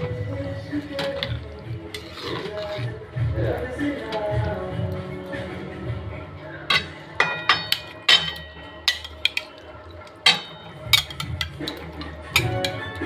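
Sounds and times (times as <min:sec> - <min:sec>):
quiet background music: 0:00.0 - 0:13.0
metal spatula clinking on pan: 0:01.0 - 0:02.8, 0:06.7 - 0:13.0.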